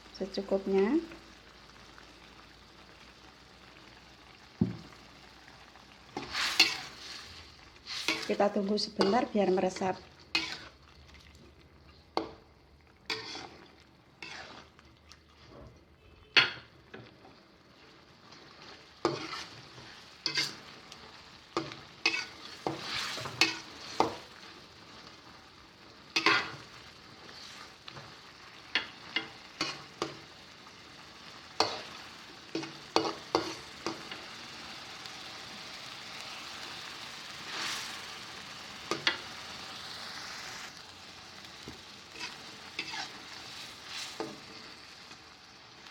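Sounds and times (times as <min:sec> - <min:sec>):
shrimp sizzling in a frying pan: 0:00.0 - 0:45.9
spatula scraping and knocking pan: 0:06.1 - 0:07.2, 0:13.1 - 0:13.6, 0:14.2 - 0:14.7, 0:19.0 - 0:20.6, 0:21.6 - 0:24.3, 0:32.6 - 0:34.2, 0:42.2 - 0:44.6.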